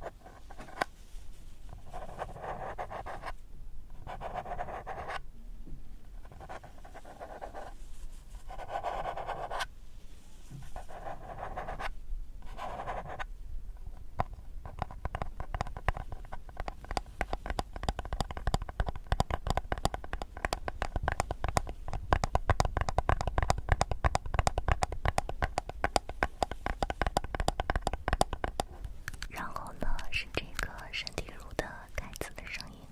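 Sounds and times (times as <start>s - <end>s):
fast scratchy clicks: 14.7s - 32.6s.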